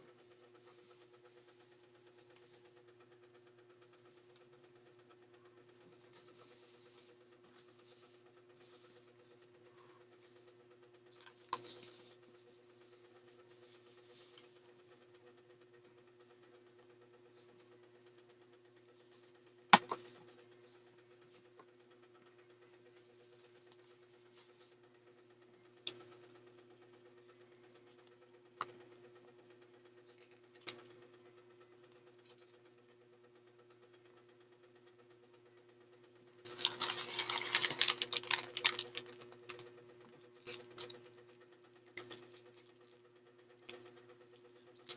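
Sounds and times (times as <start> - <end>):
faint electrical hum: 0.0 - 44.9
packaging crinkling: 36.5 - 39.6.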